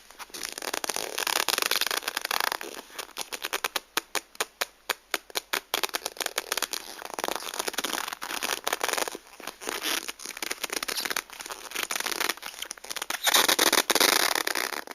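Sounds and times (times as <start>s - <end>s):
leather glove rubbing and squeaking: 0.0s - 4.5s, 5.2s - 14.9s.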